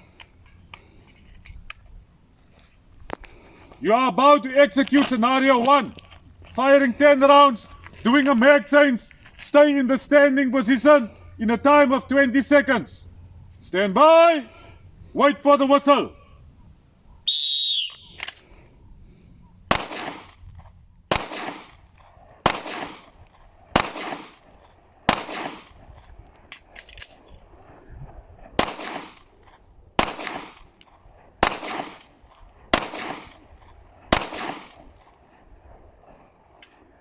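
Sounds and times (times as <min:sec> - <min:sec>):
magazine change clicks: 0:00.2 - 0:02.0, 0:17.8 - 0:18.7, 0:19.7 - 0:27.4, 0:28.6 - 0:35.3
handgun shots with echo: 0:19.7 - 0:20.5, 0:21.1 - 0:25.8, 0:28.6 - 0:29.4, 0:30.0 - 0:35.1.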